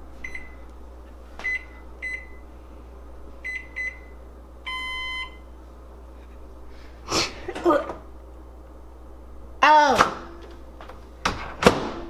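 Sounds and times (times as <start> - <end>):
oven control panel beeps: 0.2 - 0.7, 1.4 - 2.4, 3.4 - 5.5.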